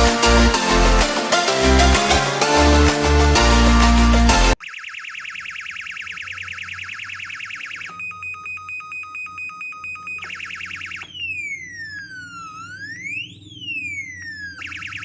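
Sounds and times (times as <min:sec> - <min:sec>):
electronic siren warble: 0:00.0 - 0:15.0
rapid electronic beeping: 0:00.0 - 0:15.0
siren wail: 0:04.4 - 0:15.0.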